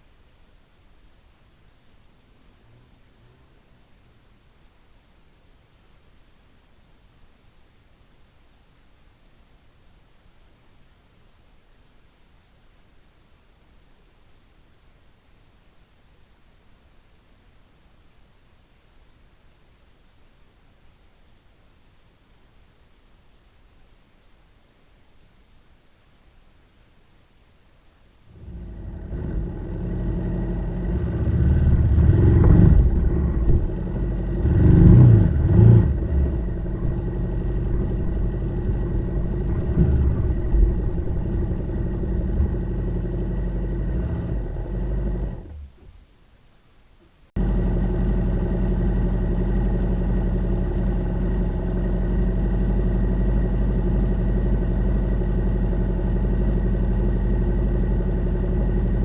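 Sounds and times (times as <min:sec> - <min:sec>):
vehicle engine revving and idling: 0:28.3 - 0:45.8, 0:47.4 - 0:59.0.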